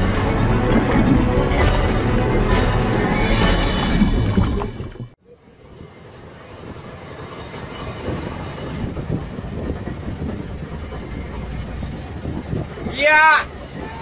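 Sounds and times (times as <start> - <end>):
boat engine rumbling: 0.0 - 14.0
wind buffeting microphone: 5.6 - 14.0.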